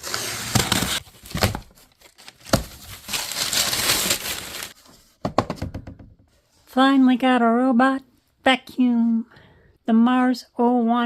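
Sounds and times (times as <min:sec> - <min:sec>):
packaging crinkling: 0:00.6 - 0:04.8.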